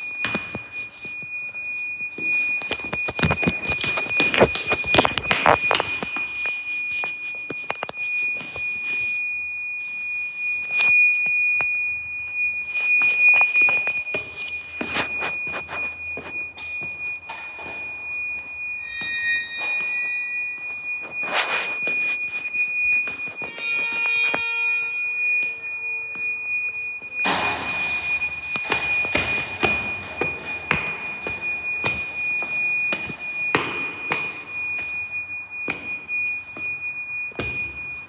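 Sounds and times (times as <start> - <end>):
high-pitched electronic beeping: 13.9 - 38.0
knocks and rustles: 27.2 - 34.4.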